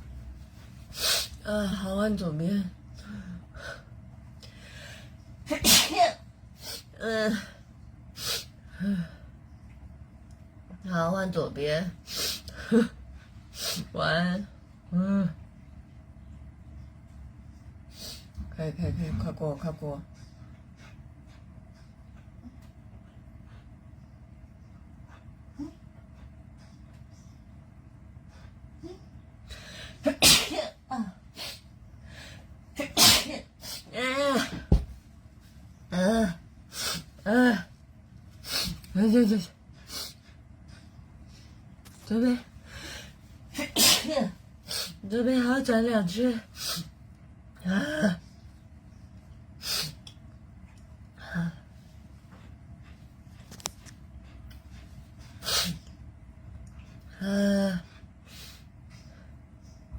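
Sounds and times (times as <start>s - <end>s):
person sneezing: 5.5s - 6.2s, 30.1s - 30.8s, 32.8s - 34.6s, 43.6s - 44.4s.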